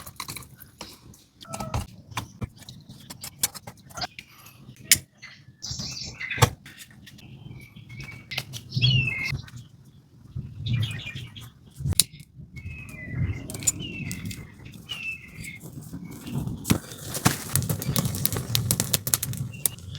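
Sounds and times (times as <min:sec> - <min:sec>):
close rustling: 0:13.5 - 0:19.9.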